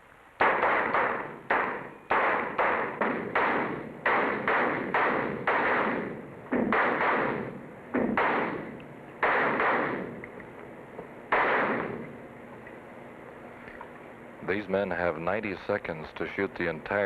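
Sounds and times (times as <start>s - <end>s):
pistol shots echoing indoors: 0.4s - 10.3s, 11.3s - 12.1s.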